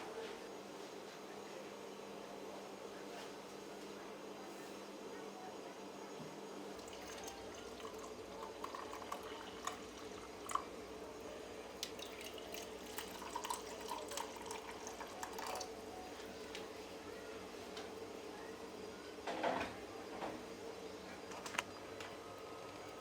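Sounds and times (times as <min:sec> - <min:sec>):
water dripping: 0:06.8 - 0:10.7, 0:11.7 - 0:15.7.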